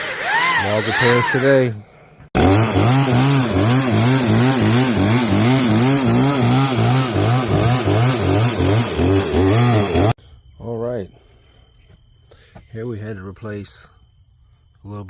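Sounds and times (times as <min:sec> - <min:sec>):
power saw cutting log: 0:00.0 - 0:01.7, 0:02.4 - 0:10.2.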